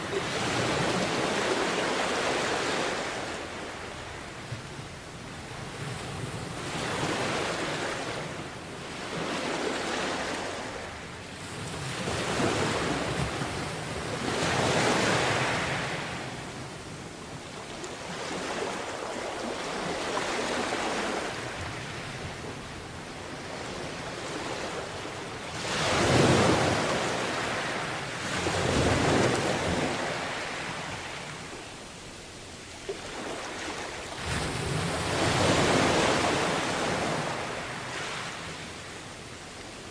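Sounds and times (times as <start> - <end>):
wind noise on microphone: 0.0 - 18.7, 34.2 - 38.9
waves washing onto beach: 0.0 - 39.9.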